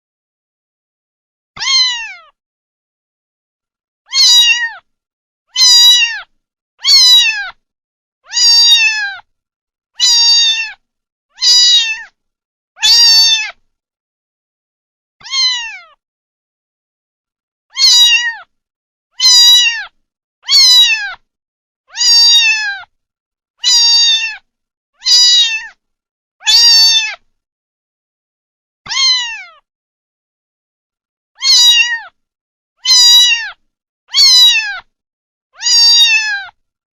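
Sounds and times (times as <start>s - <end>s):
kitten meowing: 1.6s - 2.4s, 4.1s - 4.9s, 5.5s - 7.6s, 8.3s - 9.3s, 10.0s - 10.8s, 11.4s - 12.1s, 12.8s - 13.6s, 15.2s - 16.0s, 17.7s - 18.5s, 19.2s - 21.2s, 21.9s - 22.9s, 23.6s - 25.8s, 26.4s - 27.2s, 28.9s - 29.6s, 31.4s - 32.2s, 32.8s - 34.9s, 35.6s - 36.6s.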